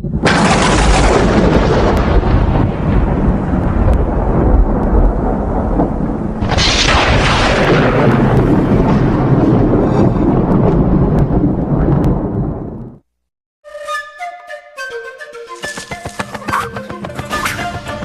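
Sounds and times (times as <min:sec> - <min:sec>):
loud thunder-like rumbling: 0:00.0 - 0:13.0
hissing crash: 0:06.4 - 0:10.5.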